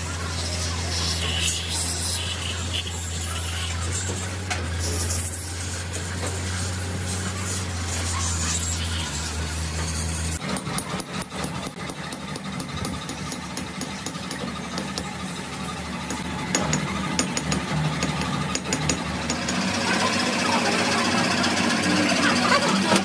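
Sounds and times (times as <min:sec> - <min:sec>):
low machine hum: 0:00.0 - 0:10.4.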